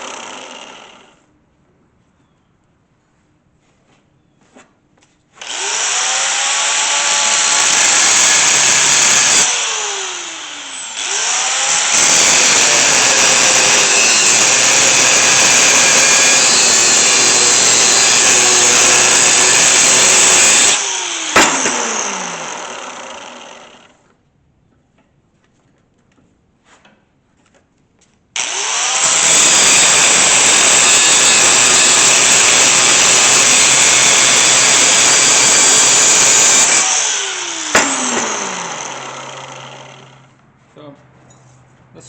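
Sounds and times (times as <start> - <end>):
power saw cutting steel pipe: 0.0 - 1.2, 5.4 - 24.0, 28.4 - 40.3.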